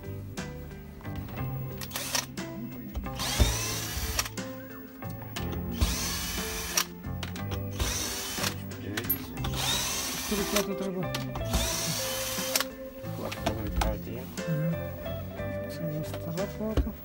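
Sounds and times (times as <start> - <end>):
power tool motor whirring: 1.8 - 2.3, 3.0 - 4.4, 5.6 - 7.0, 7.6 - 8.6, 9.4 - 10.7, 11.4 - 12.7.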